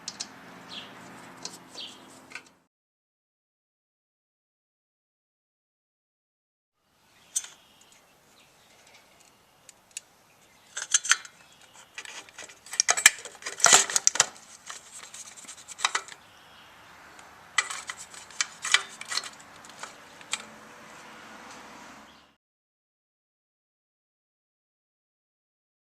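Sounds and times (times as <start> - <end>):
metal parts clinking: 10.7 - 16.2, 17.6 - 20.5.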